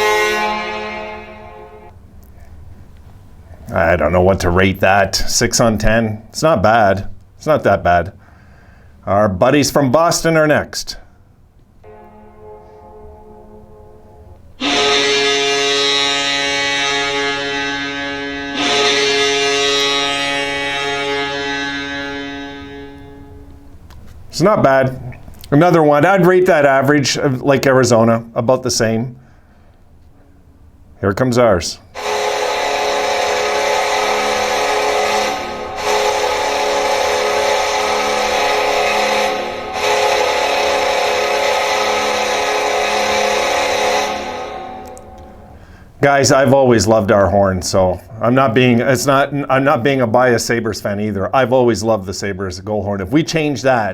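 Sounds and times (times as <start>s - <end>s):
low goal horn blasts: 0.0s - 2.0s, 11.8s - 30.9s, 31.6s - 47.1s.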